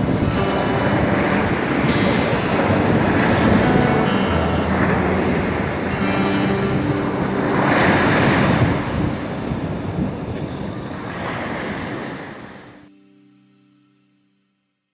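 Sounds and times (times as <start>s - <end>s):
faint music: 0.0s - 10.6s
wind buffeting microphone: 0.0s - 12.8s
waves washing onto shore: 0.0s - 12.9s.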